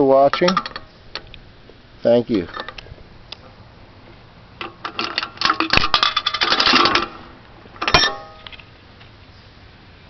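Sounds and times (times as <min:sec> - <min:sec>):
sharp metallic clink: 0:07.8 - 0:08.5.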